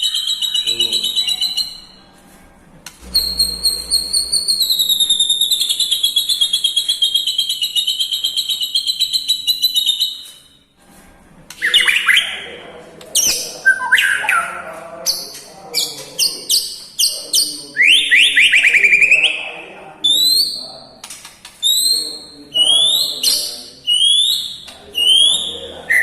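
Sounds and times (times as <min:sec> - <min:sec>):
songbird singing: 0:00.0 - 0:02.0, 0:21.6 - 0:26.0
whistled bird phrases: 0:00.0 - 0:02.0, 0:03.2 - 0:10.6, 0:11.6 - 0:12.5, 0:13.2 - 0:14.6, 0:15.8 - 0:20.8, 0:21.6 - 0:26.0.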